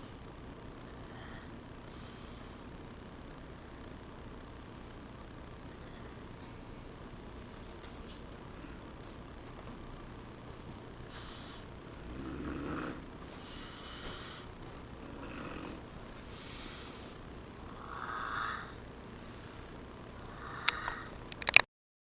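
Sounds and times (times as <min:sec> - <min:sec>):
woman snoring: 0:00.9 - 0:02.7, 0:11.1 - 0:18.9, 0:20.1 - 0:21.3
sharp clicks: 0:20.6 - 0:21.7.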